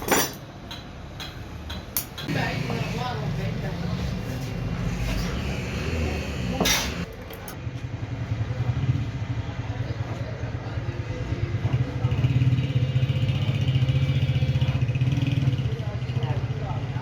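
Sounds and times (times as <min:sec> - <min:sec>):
engine running: 0:02.2 - 0:07.6.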